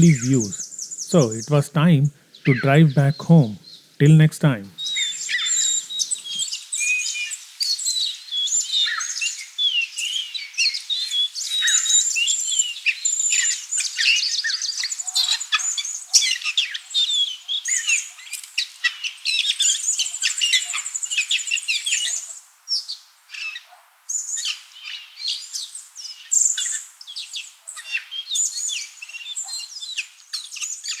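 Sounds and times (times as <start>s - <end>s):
small birds chirping and singing: 0.0s - 4.0s.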